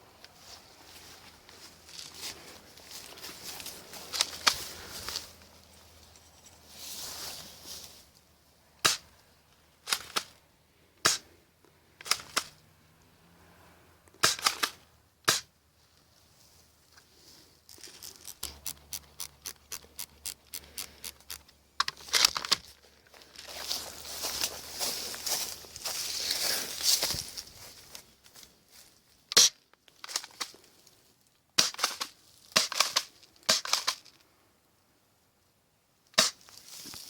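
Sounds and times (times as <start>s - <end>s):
airsoft shotgun snaps: 11.0s - 11.3s
shotgun pump clicking: 17.8s - 22.2s.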